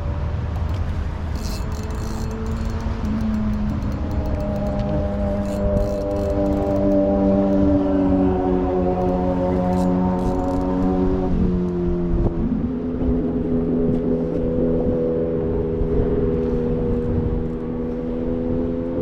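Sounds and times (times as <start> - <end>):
wind rumble on microphone: 0.0 - 19.0
motor engine running: 0.4 - 11.7.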